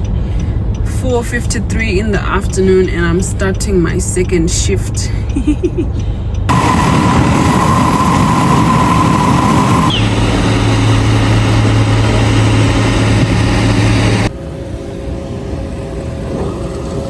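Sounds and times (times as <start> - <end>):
heavy construction machinery running: 6.1 - 17.0.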